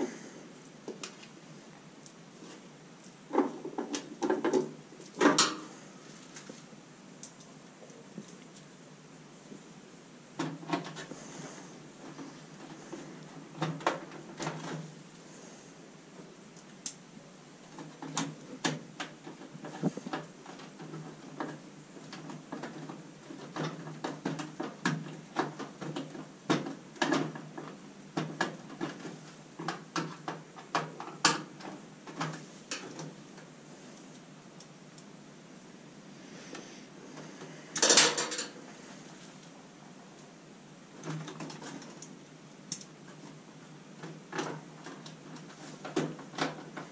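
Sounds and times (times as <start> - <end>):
tools and small parts clattering: 37.7 - 38.6.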